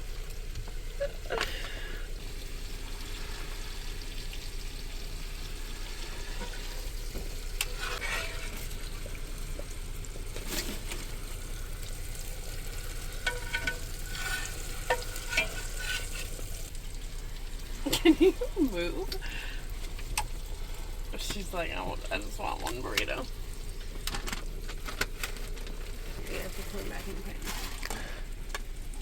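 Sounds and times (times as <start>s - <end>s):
meat sizzling in a pan: 0.0s - 29.0s.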